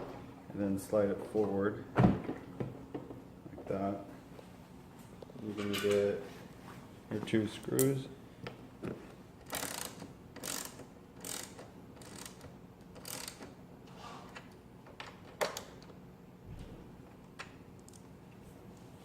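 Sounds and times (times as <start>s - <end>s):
hand tool clicking strokes: 13.0s - 13.4s.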